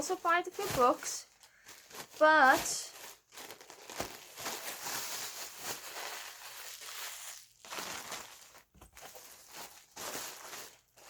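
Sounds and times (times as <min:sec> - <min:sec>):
packaging rustling and crinkling: 0:00.0 - 0:11.0.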